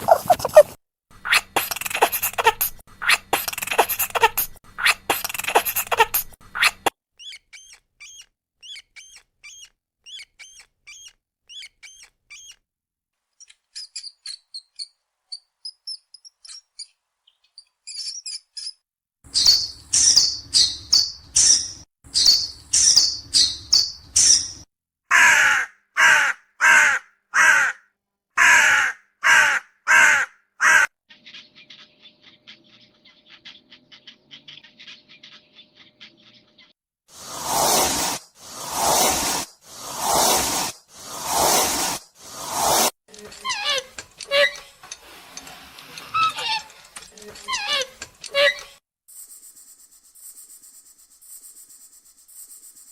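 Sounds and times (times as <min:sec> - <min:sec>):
small bird chirps: 0:00.0 - 0:12.6, 0:13.4 - 0:24.7, 0:31.1 - 0:36.8
harsh caw-like bird calls: 0:25.1 - 0:30.9.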